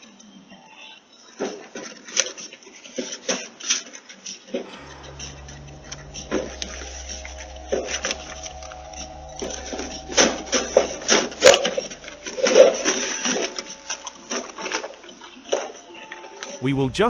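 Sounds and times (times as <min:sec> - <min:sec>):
low hum: 0:04.6 - 0:15.4.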